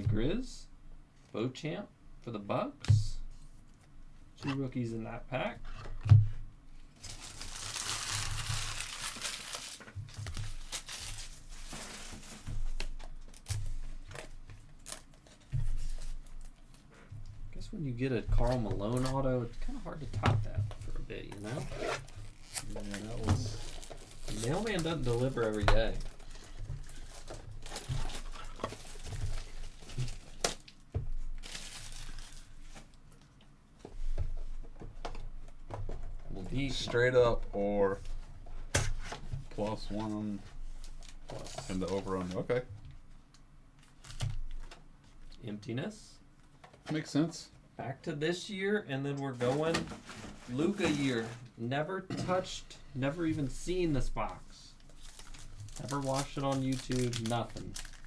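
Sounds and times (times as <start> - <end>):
card pack wrapper crinkling: 7.0 - 16.8, 21.3 - 30.8, 31.4 - 32.8, 53.6 - 58.0.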